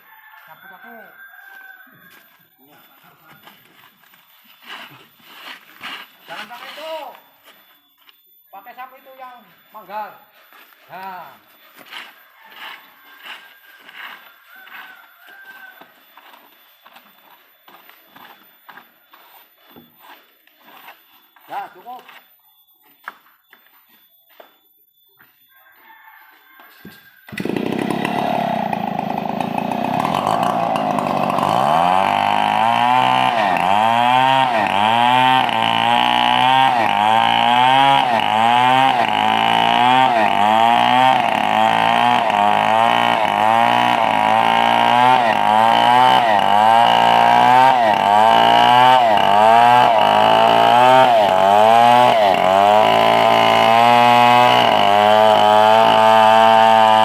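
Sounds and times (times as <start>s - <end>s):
engine-powered saw cutting wood: 27.3s - 57.0s.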